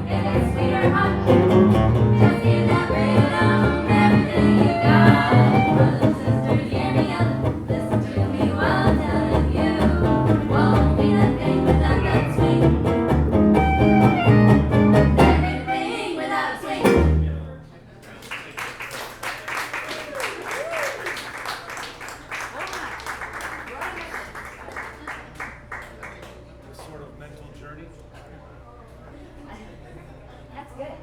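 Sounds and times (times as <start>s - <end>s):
live band playing country music: 0.0s - 6.7s, 8.8s - 15.8s, 16.8s - 17.4s.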